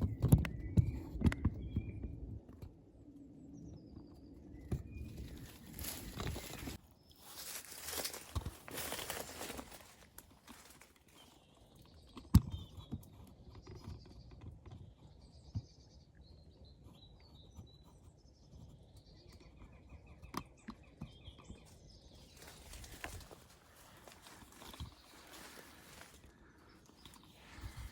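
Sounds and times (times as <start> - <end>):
small birds singing and twittering: 0.0 - 27.9
brush rustling: 5.1 - 11.3, 22.2 - 27.9.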